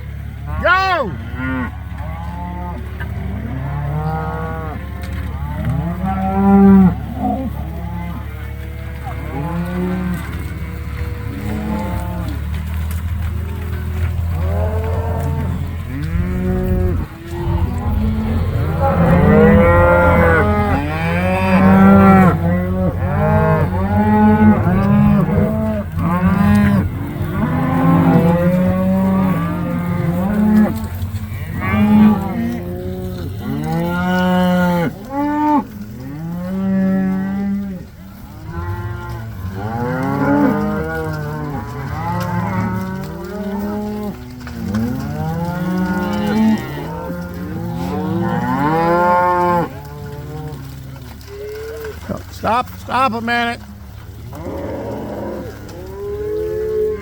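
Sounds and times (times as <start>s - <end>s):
cattle mooing and bawling: 0.0s - 57.0s
steady low hum: 15.5s - 23.0s.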